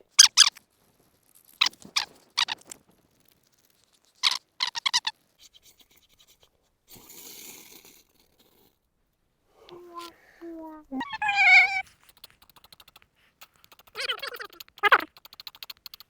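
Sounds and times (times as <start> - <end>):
soft rustling: 0.0 - 6.8.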